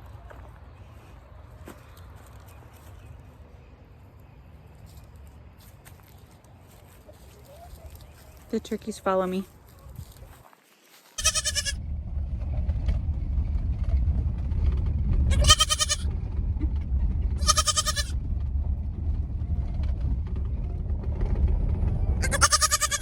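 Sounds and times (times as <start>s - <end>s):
goat bleating: 11.2s - 11.8s, 15.3s - 16.1s, 17.4s - 18.2s, 22.2s - 23.0s
steady low rumble: 11.2s - 23.0s.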